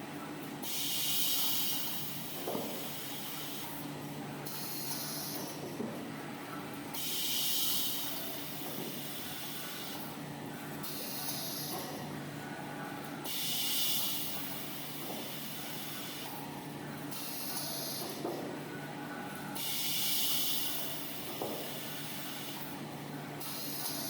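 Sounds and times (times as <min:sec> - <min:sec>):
cutting machine hiss: 0:00.6 - 0:03.8, 0:04.5 - 0:05.6, 0:07.0 - 0:10.1, 0:10.8 - 0:12.0, 0:13.3 - 0:16.3, 0:17.1 - 0:18.3, 0:19.6 - 0:22.8.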